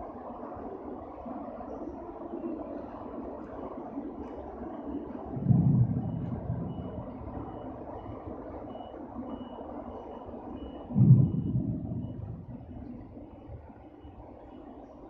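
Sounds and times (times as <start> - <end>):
reversing alarm beeping: 4.6 - 15.0
low rumble: 5.3 - 8.8, 10.9 - 13.8.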